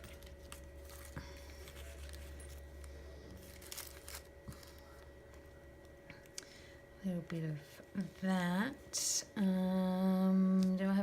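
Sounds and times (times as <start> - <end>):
paper rustling: 0.0 - 2.7, 3.3 - 5.4
low electrical hum: 0.0 - 11.0.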